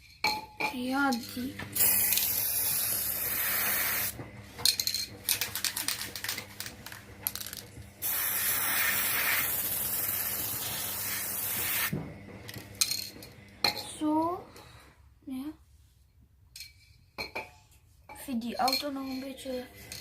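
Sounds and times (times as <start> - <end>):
spray can hissing: 1.8 - 4.1, 8.0 - 12.0
rapid clicking and clinking: 4.6 - 7.7.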